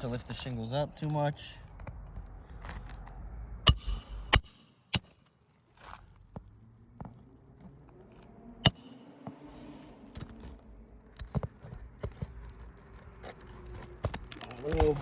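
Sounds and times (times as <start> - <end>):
hammer striking metal: 3.7 - 5.9, 8.6 - 9.5.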